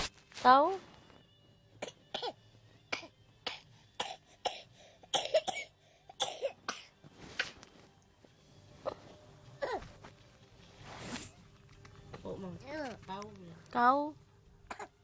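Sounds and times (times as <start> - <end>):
small child coughing: 1.8 - 7.0, 9.6 - 10.0, 14.7 - 15.0.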